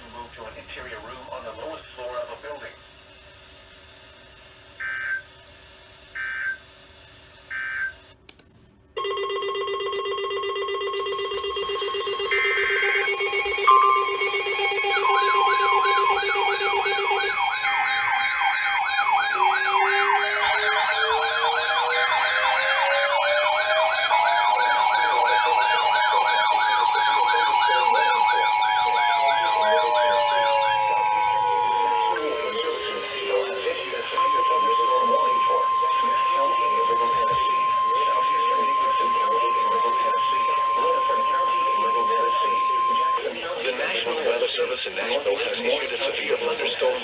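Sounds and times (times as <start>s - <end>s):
data burst tones: 4.0s - 5.4s, 9.0s - 45.8s
electronic alarm tones: 4.8s - 5.3s, 6.1s - 6.7s, 7.5s - 8.2s, 9.0s - 44.4s
buzzing tone: 9.0s - 43.6s
fast warbling wails: 11.8s - 43.7s
slow rising wail: 12.4s - 43.4s.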